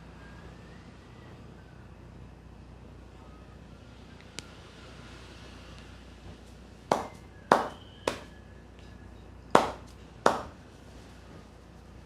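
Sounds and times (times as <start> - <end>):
hands slapping head: 6.9 - 8.3, 9.6 - 10.6.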